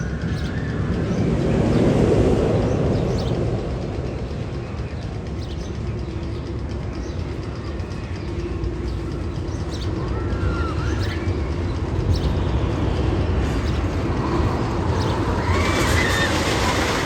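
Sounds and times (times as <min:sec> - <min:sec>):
low vehicle rumble: 0:00.0 - 0:17.0
short squealing glides: 0:13.4 - 0:17.0.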